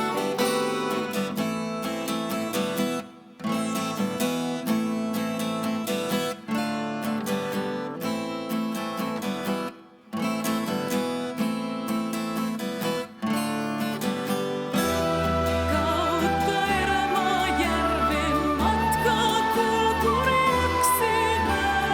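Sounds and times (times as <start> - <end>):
acoustic guitar strumming: 0.0 - 21.9.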